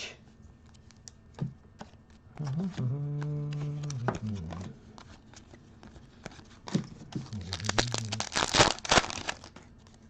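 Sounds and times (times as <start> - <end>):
foil wrapper crinkling: 7.2 - 9.6
foil wrapper ripping open: 7.3 - 9.5.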